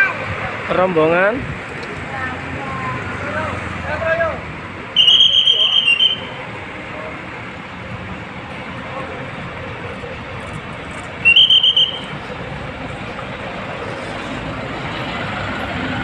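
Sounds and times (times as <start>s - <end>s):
bus and traffic engines running: 0.0s - 16.0s
shrill warbling tone: 5.0s - 6.3s.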